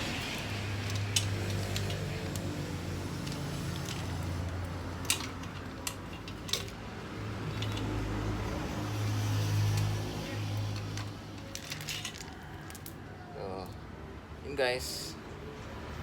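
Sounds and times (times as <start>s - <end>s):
metal chain clinking: 0.0s - 6.8s.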